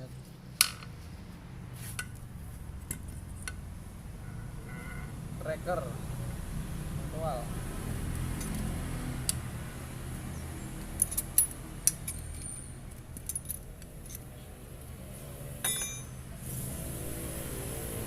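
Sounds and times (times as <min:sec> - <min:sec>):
metal tools clinking: 0:11.0 - 0:14.3, 0:15.6 - 0:16.3.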